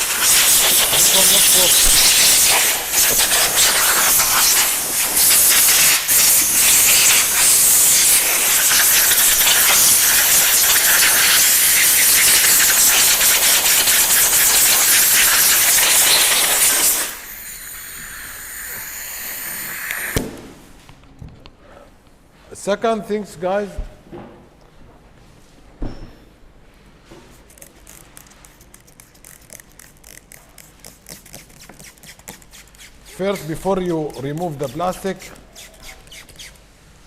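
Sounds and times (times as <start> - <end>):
compressed air blow gun hissing: 0.0 - 20.4.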